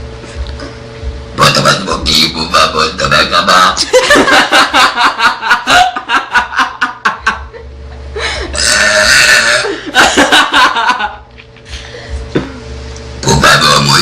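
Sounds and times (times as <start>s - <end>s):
laughter: 3.8s - 8.6s, 9.6s - 11.6s
girl burping loudly: 8.5s - 9.8s.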